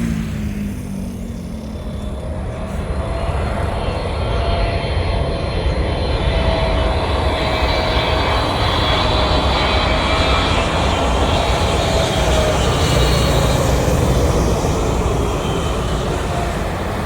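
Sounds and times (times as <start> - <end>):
jet engines rumbling and whining: 0.0 - 17.0.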